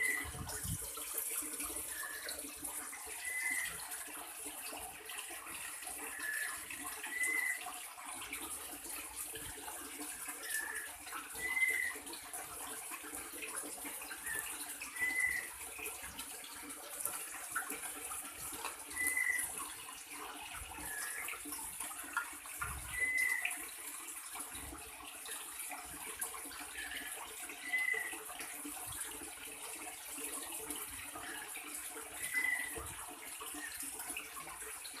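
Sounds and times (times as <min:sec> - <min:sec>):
bird whistling: 0:00.0 - 0:00.3, 0:03.2 - 0:03.8, 0:06.2 - 0:07.6, 0:10.4 - 0:12.0, 0:15.0 - 0:15.5, 0:18.9 - 0:19.5, 0:20.9 - 0:21.2, 0:22.9 - 0:23.4, 0:27.6 - 0:28.1, 0:32.2 - 0:32.8.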